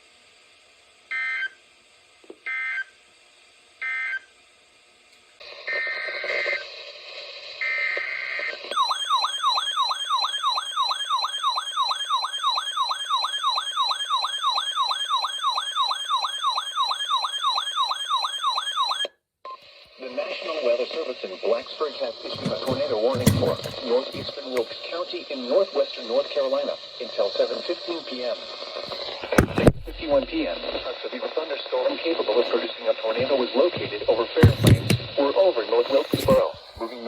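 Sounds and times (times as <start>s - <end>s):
radio static: 5.4s - 8.7s, 19.9s - 37.0s.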